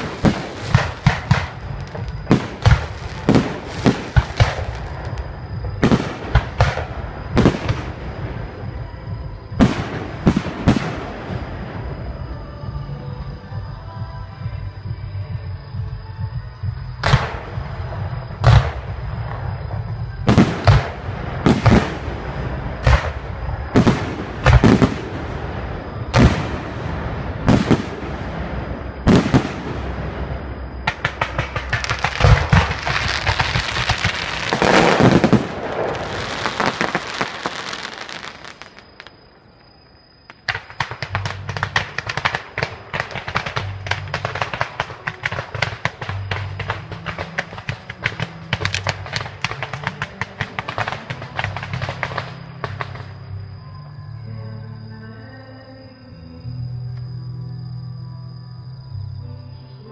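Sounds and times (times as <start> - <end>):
fireworks crackling: 0.0 - 12.2, 17.0 - 39.4, 40.3 - 53.4.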